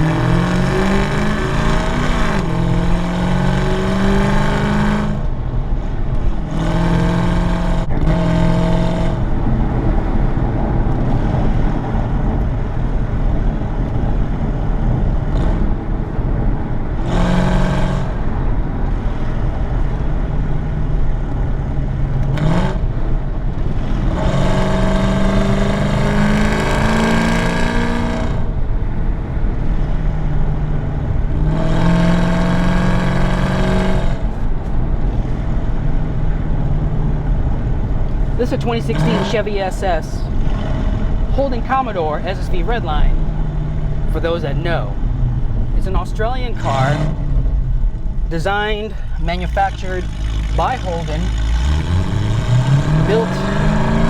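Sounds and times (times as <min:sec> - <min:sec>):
car exhaust revving: 0:00.0 - 0:54.0.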